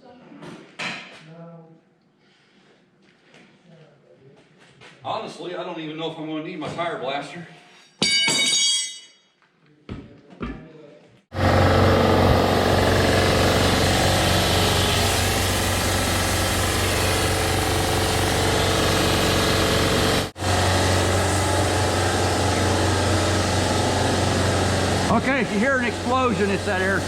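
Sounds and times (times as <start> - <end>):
air compressor running: 11.3 - 27.0.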